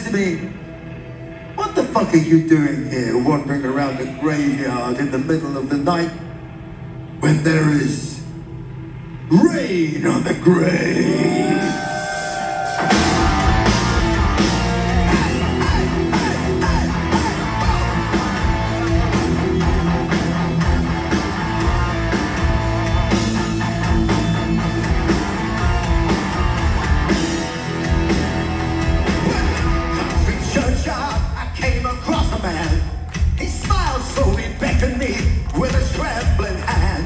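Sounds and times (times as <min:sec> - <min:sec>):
heavy metal band playing: 0:11.3 - 0:37.0.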